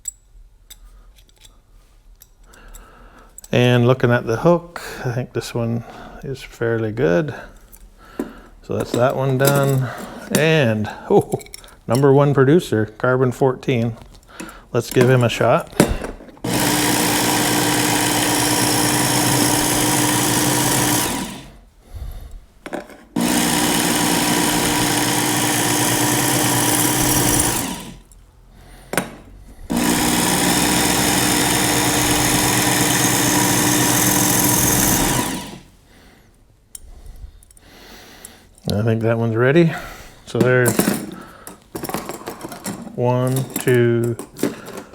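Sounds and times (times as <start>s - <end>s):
belt sharpener grinding: 8.8s - 10.5s, 15.0s - 22.1s, 23.1s - 28.2s, 29.0s - 35.8s.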